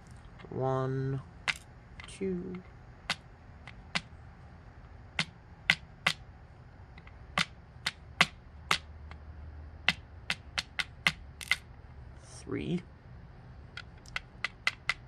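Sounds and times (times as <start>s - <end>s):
small metallic clicks and taps: 9.8s - 11.6s, 13.7s - 15.0s.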